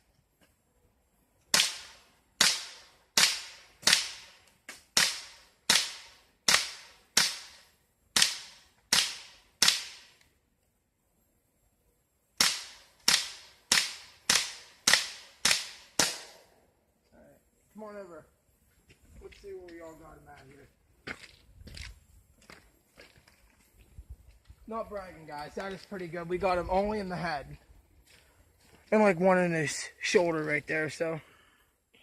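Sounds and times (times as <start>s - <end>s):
air pistol shots: 1.5s - 10.2s, 12.4s - 16.5s.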